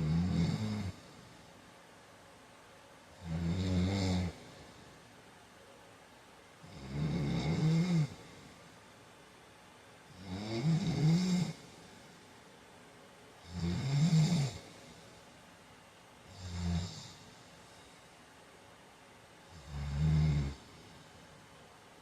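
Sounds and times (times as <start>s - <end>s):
man snoring: 0.0s - 1.2s, 3.2s - 4.6s, 6.6s - 8.4s, 10.1s - 11.7s, 13.4s - 14.8s, 16.3s - 17.3s, 19.5s - 21.0s.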